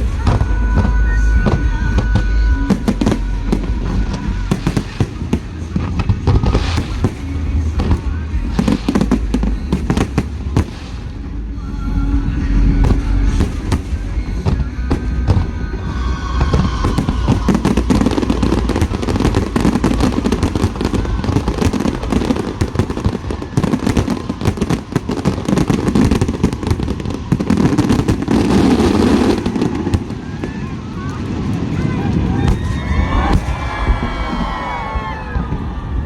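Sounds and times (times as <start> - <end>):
fireworks bangs and crackles: 0.0 - 36.0
low rumble: 0.0 - 36.0.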